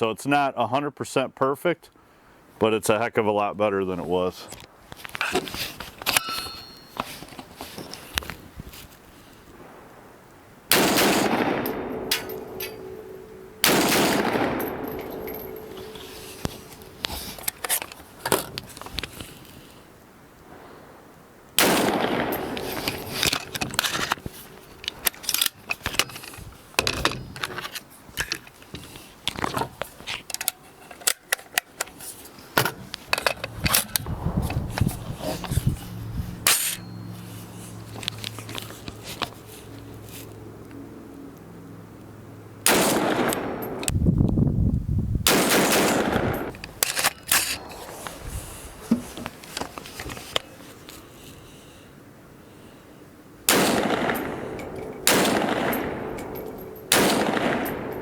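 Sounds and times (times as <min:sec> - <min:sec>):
rifle shots with echo: 0:10.7 - 0:17.0, 0:21.6 - 0:23.2, 0:42.6 - 0:43.8, 0:45.3 - 0:46.5, 0:53.5 - 0:58.0.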